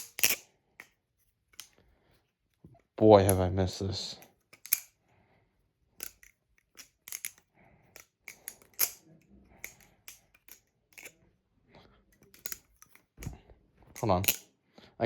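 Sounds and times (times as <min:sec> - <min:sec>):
metal butterfly knife clacking: 0:00.0 - 0:00.9, 0:04.5 - 0:05.0, 0:06.0 - 0:11.2, 0:12.2 - 0:13.3, 0:14.0 - 0:14.4.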